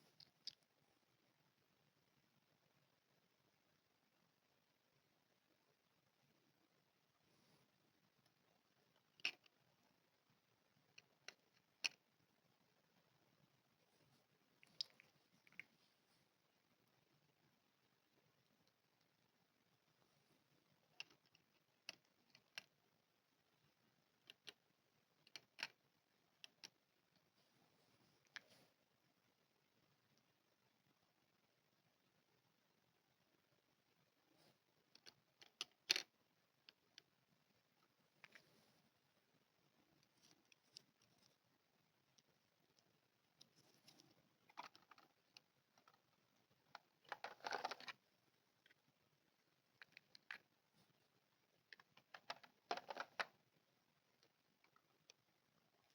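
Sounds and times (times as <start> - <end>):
crinkly rustling: 43.4 - 48.8
plastic toy pieces clicking: 46.8 - 48.0, 51.8 - 53.3.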